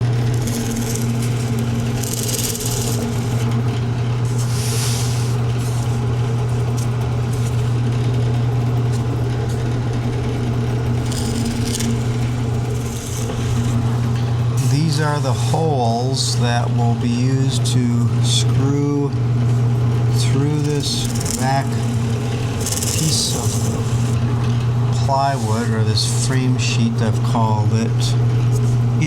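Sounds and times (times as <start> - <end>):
drill press motor humming: 0.0 - 29.0
short hissing bursts: 4.4 - 5.4.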